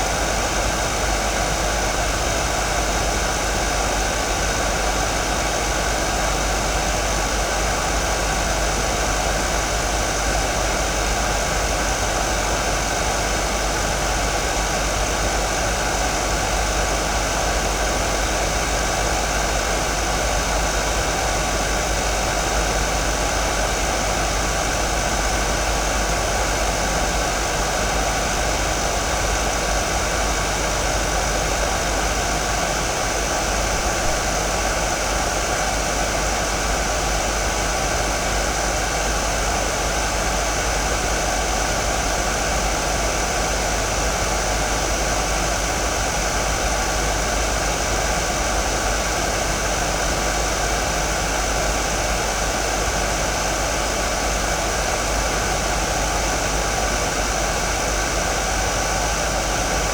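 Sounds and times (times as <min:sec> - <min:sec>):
hair dryer running: 0:31.5 - 0:36.8.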